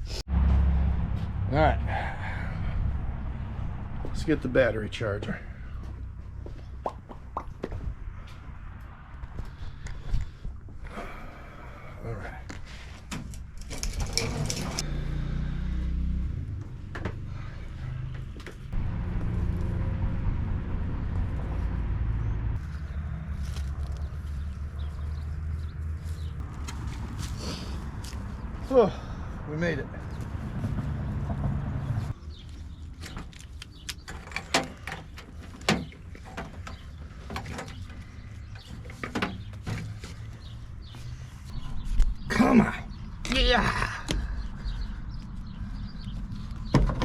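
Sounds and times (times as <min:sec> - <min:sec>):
truck engine rumbling: 0:00.0 - 0:47.0
tools and metal parts clicking: 0:13.2 - 0:14.8.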